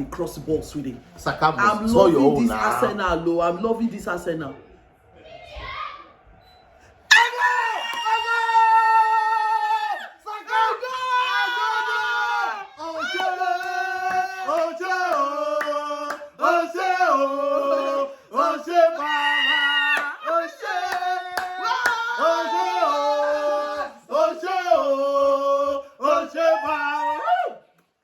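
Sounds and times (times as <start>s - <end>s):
hand claps: 13.5s - 16.3s, 20.9s - 22.1s.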